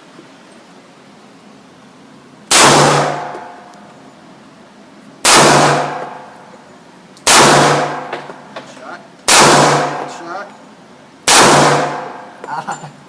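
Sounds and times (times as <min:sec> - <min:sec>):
gunshots with ringing tail: 0:02.5 - 0:03.6, 0:05.2 - 0:06.3, 0:07.3 - 0:08.1, 0:09.3 - 0:10.3, 0:11.2 - 0:12.4.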